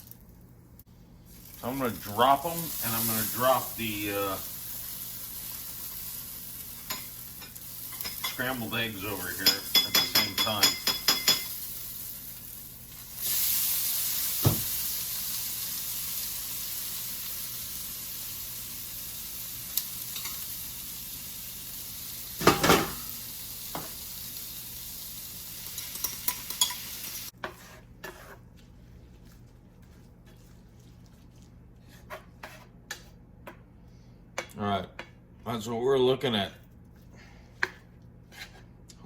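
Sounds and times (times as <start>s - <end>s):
food sizzling in hot pan: 1.3s - 27.4s
utensil clinking against pan: 9.4s - 11.6s.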